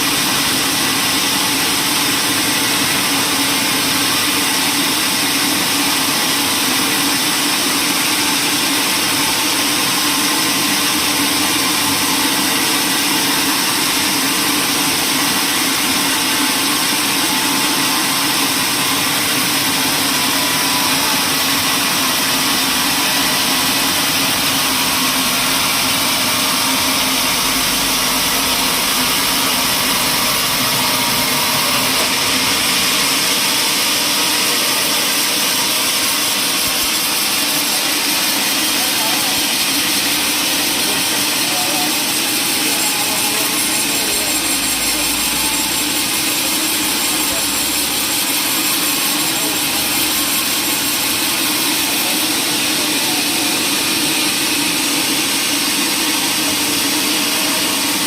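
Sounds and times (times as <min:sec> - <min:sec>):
woodworking machinery whirring: 0:00.0 - 0:58.0.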